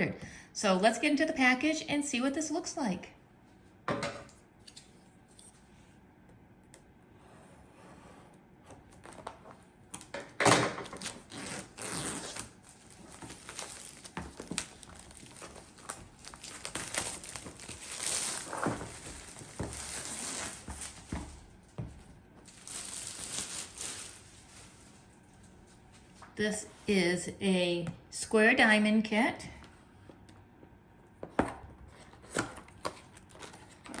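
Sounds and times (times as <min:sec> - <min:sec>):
packaging crinkling and rustling: 0:08.9 - 0:21.8, 0:22.4 - 0:25.6, 0:32.0 - 0:34.0.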